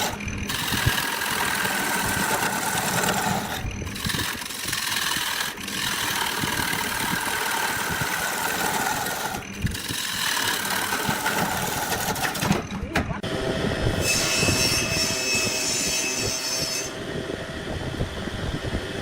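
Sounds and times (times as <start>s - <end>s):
wood lathe humming: 0.0s - 12.5s
turning tool cutting wood: 0.0s - 12.7s.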